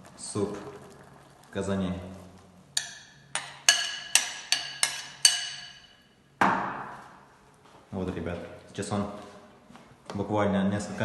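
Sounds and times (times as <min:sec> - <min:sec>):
metal utensil knocking on a pot: 0:02.8 - 0:06.6.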